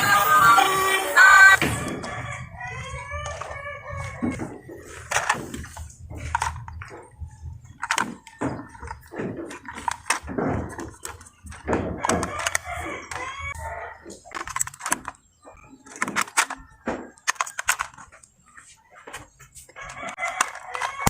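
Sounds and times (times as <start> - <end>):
rooster crowing: 1.2 - 4.4
plastic toy pieces clattering: 2.7 - 21.0.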